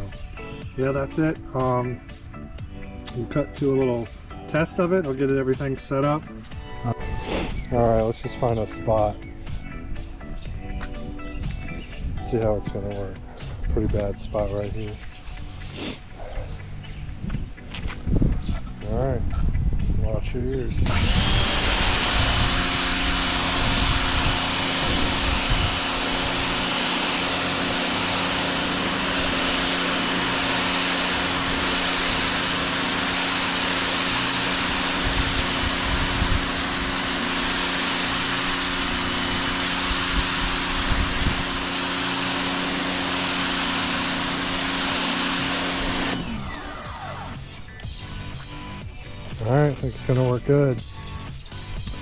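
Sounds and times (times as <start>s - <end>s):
pressure washer pump humming: 20.8s - 47.6s.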